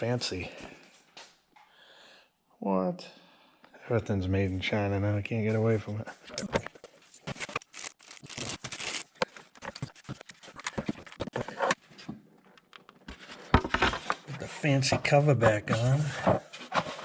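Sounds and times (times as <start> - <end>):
engine parts being handled: 6.2 - 11.9, 12.6 - 14.4.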